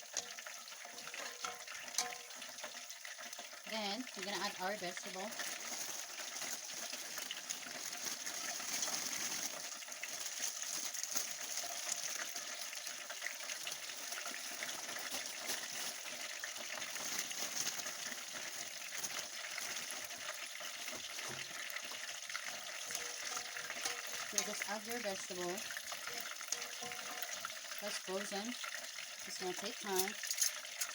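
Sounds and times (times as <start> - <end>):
garlic sizzling in pan: 0.0 - 30.9.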